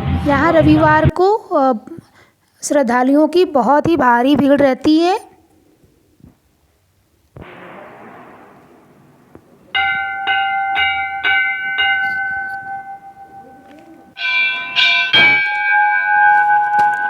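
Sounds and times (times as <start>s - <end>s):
louder bell strikes: 7.4s - 17.0s
temple bell ringing: 7.4s - 17.0s.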